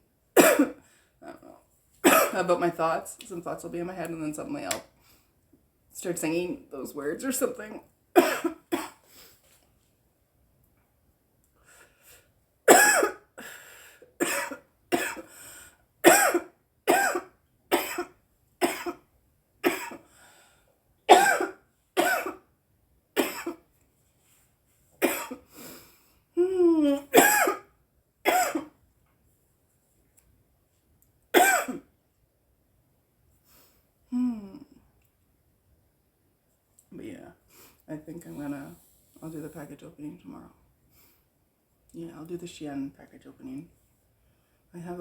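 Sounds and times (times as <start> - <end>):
woman coughing: 0.4 - 1.4, 2.0 - 2.5, 8.2 - 9.0, 12.7 - 13.3, 14.2 - 15.3, 16.0 - 19.0, 19.6 - 20.0, 21.1 - 22.4, 23.2 - 23.6, 25.0 - 25.4, 27.1 - 27.7, 28.3 - 28.8, 31.4 - 31.9.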